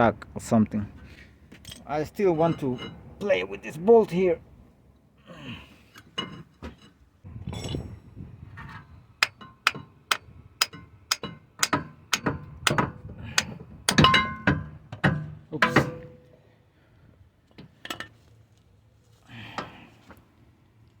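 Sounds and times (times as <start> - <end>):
hammer striking metal: 9.2 - 16.2.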